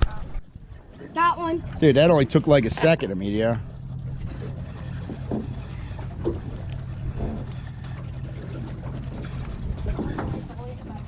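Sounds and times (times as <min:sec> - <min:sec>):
boat engine idling: 0:00.0 - 0:11.0
water noise: 0:00.0 - 0:11.0
wind: 0:00.0 - 0:11.0
faint voices: 0:07.3 - 0:11.0.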